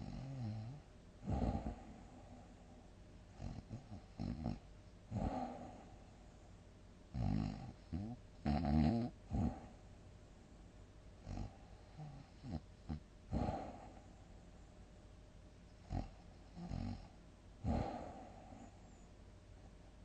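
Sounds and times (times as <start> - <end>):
person snoring: 0.0 - 2.4, 3.4 - 6.0, 7.2 - 9.8, 13.3 - 14.0, 15.9 - 18.8.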